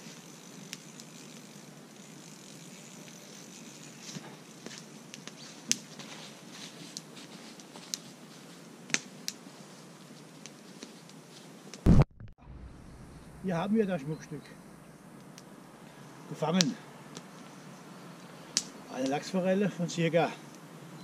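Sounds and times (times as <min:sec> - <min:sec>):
steady background hiss: 0:12.4 - 0:21.0.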